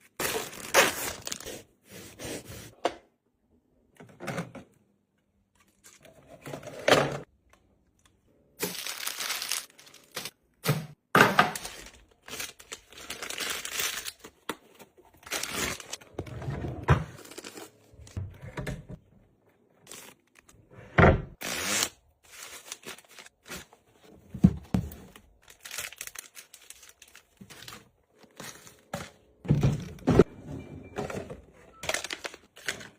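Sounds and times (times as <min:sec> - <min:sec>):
packaging crinkling and tearing: 0:00.1 - 0:01.5, 0:08.6 - 0:10.3, 0:11.6 - 0:14.5, 0:15.2 - 0:16.0, 0:25.2 - 0:28.8, 0:31.8 - 0:32.9
items knocking when put down: 0:28.9 - 0:31.6.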